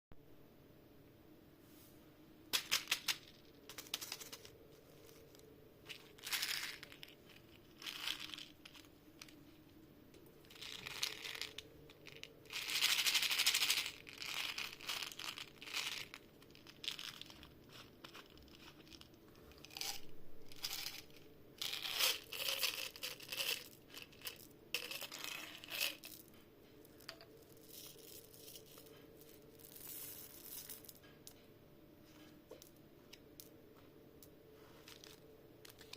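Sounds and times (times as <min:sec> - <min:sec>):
crunching candy-coated chocolates: 0:06.0 - 0:09.5, 0:10.4 - 0:26.3.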